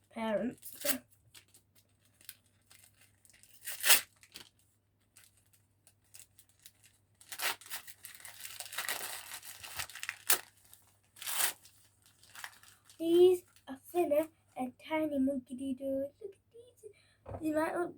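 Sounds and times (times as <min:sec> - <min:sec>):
wrapping paper tearing and crumpling: 0:00.5 - 0:13.7.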